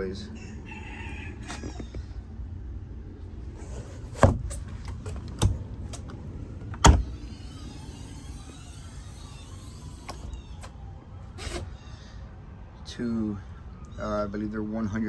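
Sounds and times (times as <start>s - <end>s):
hatch lids clunking: 1.3s - 2.2s.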